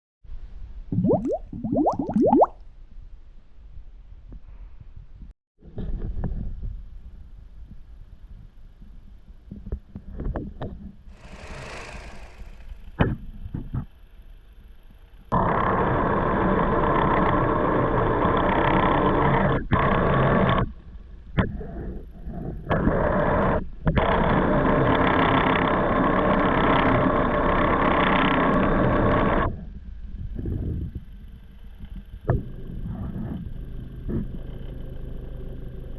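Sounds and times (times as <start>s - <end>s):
loud abnormal engine noise: 11.1s - 13.6s, 32.4s - 35.9s.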